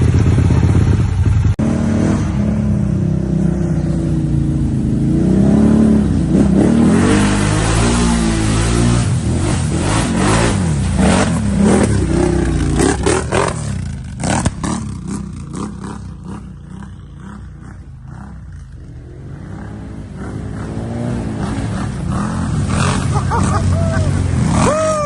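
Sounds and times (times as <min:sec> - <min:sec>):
off-road engine revving: 0:00.0 - 0:25.0
sharp cracks: 0:14.2 - 0:14.8.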